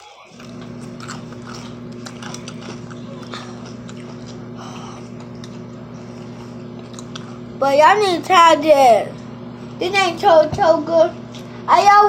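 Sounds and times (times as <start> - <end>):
chewing and crunching: 0.2 - 7.6
low electrical hum: 0.2 - 12.0.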